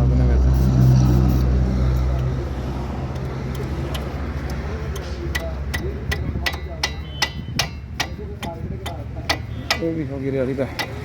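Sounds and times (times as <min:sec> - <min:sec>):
metal tool clicking: 0:03.1 - 0:10.0, 0:10.7 - 0:11.0.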